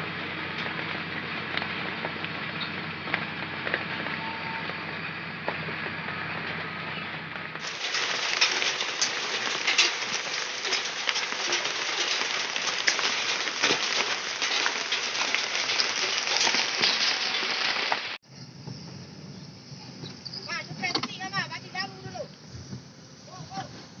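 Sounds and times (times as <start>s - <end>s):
heavy rain pouring: 0.0s - 18.2s.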